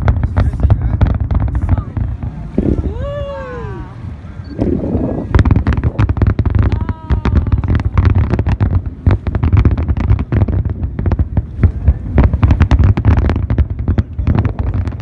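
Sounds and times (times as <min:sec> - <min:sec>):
fireworks bangs: 0:00.0 - 0:15.0
heavy low rumble: 0:00.0 - 0:15.0.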